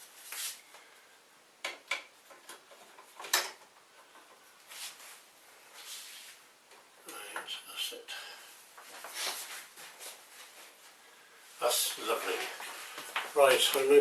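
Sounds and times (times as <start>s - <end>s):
soft rubbing: 4.6s - 6.5s, 8.4s - 14.0s.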